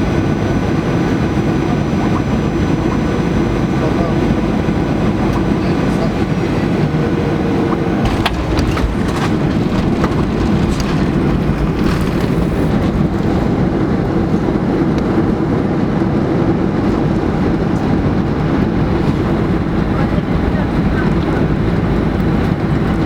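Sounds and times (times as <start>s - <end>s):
airplane cabin engine rumble: 0.0s - 23.0s
cabin rattles: 8.0s - 13.8s.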